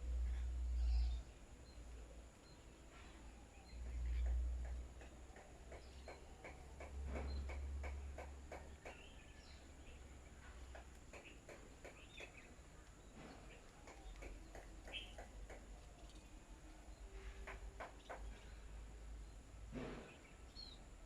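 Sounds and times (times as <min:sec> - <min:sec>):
birds pecking at rice: 0:10.4 - 0:16.7.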